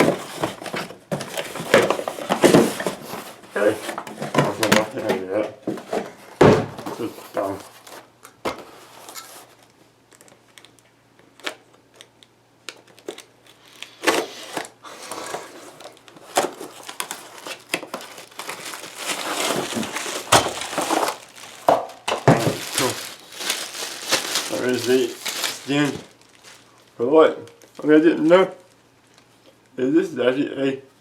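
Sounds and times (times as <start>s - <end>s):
packaging crinkling and tearing: 8.9s - 29.6s.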